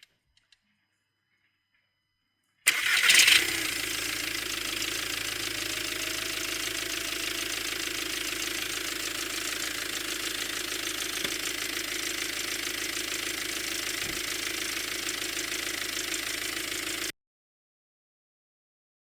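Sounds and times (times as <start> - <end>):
diesel engine idling: 2.7 - 17.1.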